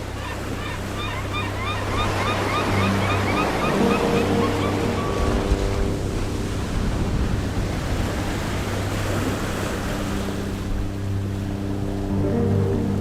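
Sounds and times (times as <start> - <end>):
sea waves breaking on shore: 0.0 - 13.0
wind buffeting microphone: 0.0 - 13.0.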